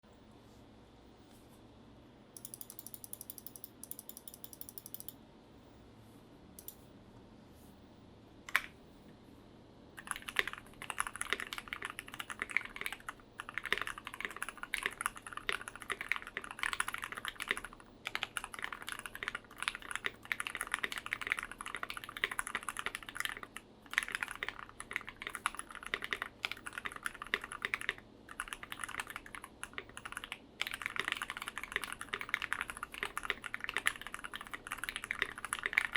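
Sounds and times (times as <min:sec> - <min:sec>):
typing on mechanical keyboard: 0:02.4 - 0:05.2, 0:10.0 - 0:35.9.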